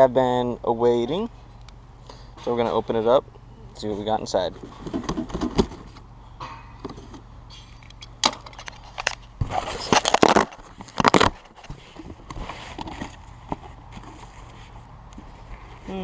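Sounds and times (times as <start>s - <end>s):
tearing of tape and cardboard: 8.6s - 11.7s.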